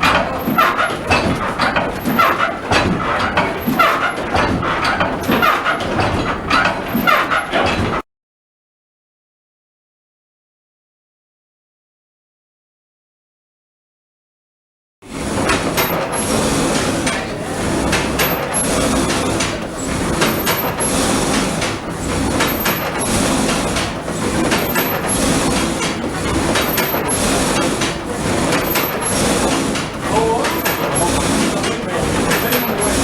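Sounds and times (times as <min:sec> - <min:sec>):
sawmill machinery clattering: 0:00.0 - 0:08.0, 0:15.1 - 0:33.0
regular repeating knock: 0:15.3 - 0:33.0.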